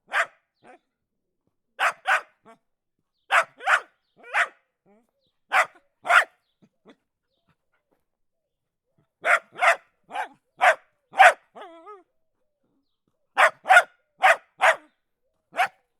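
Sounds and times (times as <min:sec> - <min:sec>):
dog barking: 0:00.0 - 0:00.8, 0:01.8 - 0:02.6, 0:03.3 - 0:04.6, 0:05.5 - 0:07.0, 0:09.2 - 0:11.7, 0:13.4 - 0:15.8.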